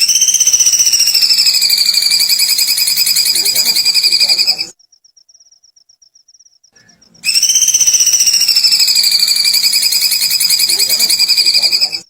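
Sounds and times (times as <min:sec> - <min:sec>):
bird pulsing trill: 0:00.0 - 0:12.0.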